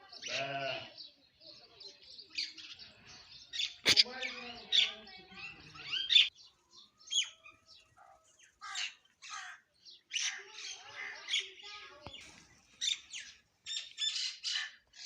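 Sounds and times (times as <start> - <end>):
mynas squawking and chirping: 3.5 - 6.3, 12.8 - 15.0.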